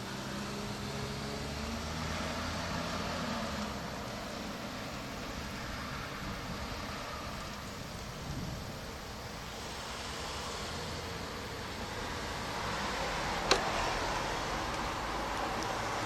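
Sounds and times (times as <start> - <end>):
heavy rain hissing: 0.0 - 16.0
sharp click: 13.4 - 13.7.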